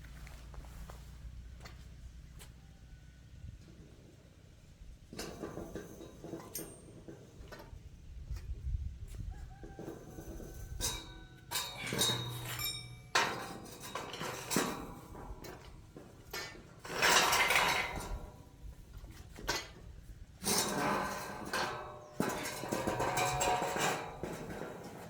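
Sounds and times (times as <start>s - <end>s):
metal scraping: 9.8s - 19.8s, 20.4s - 25.0s.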